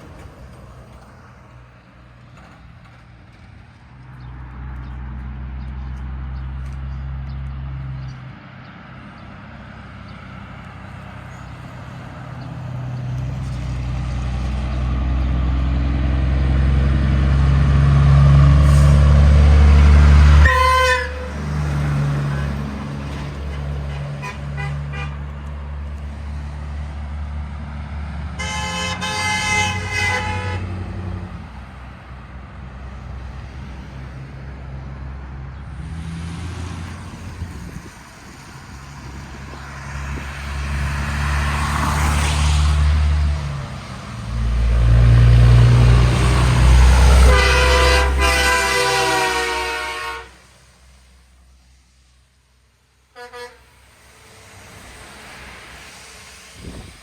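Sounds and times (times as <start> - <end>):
diesel locomotive rumbling: 0.0 - 57.0
short horn toot: 20.4 - 21.4, 47.2 - 50.4
multi-chime train air horn: 20.4 - 21.5, 28.4 - 30.6, 47.2 - 50.4, 53.1 - 53.8.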